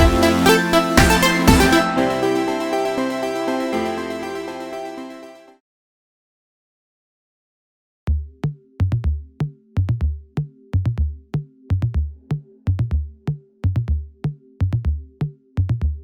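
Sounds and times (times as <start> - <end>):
drum machine kick beat: 0.0 - 2.2
electronic dance music: 0.0 - 5.5
held synth chord: 0.0 - 5.5.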